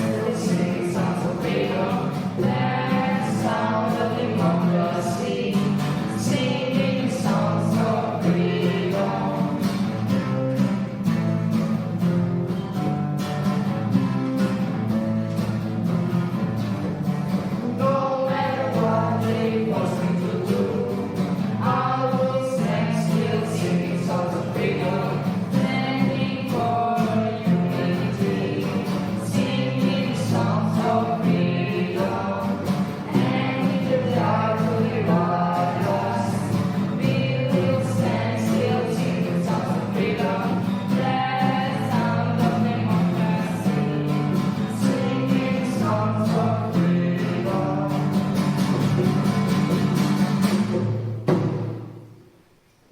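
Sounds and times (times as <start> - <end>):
song with choir-like singing: 0.0 - 10.0, 17.5 - 48.2.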